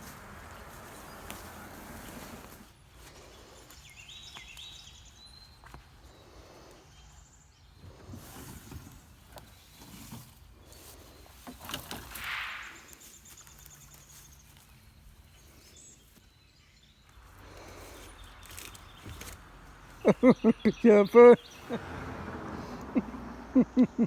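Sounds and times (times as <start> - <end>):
rustling: 0.0 - 3.9, 7.8 - 16.3, 17.2 - 20.3
bird chirping: 0.0 - 8.0, 8.7 - 21.8.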